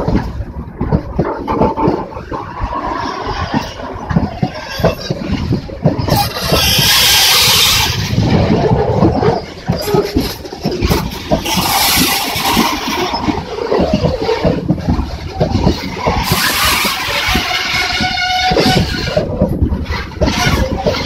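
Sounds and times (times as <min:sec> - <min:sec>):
train rumble: 0:00.0 - 0:21.0
train wheels clattering on rails: 0:00.0 - 0:21.0
wheel squeal: 0:04.4 - 0:08.2, 0:15.3 - 0:19.3, 0:19.9 - 0:21.0.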